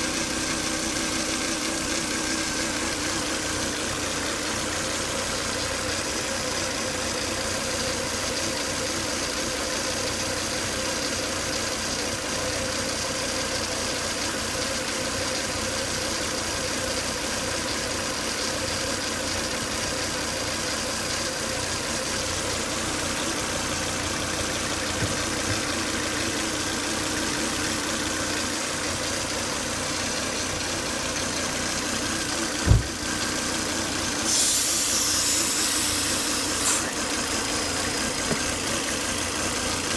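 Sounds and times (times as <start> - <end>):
car engine idling with whine: 0.0 - 39.9
sharp thump: 32.6 - 33.1.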